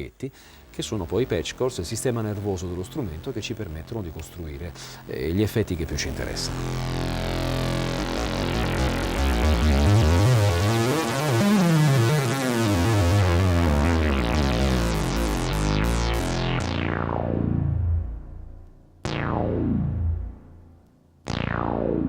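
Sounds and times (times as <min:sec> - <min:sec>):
falling synthesizer pitch sweeps: 0:00.7 - 0:22.0
warbling synthesizer tone: 0:05.4 - 0:22.0.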